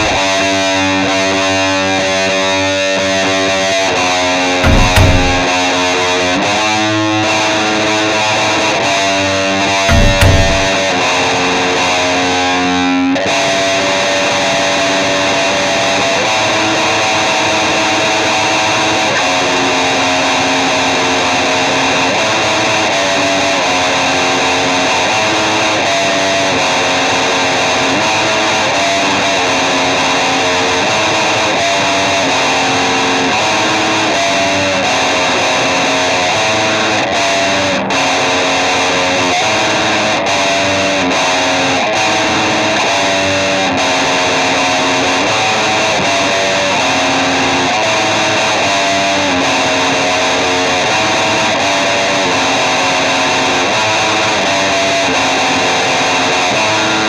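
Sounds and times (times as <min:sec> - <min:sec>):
distorted electric guitar chords: 0:04.6 - 0:05.5, 0:09.9 - 0:11.1.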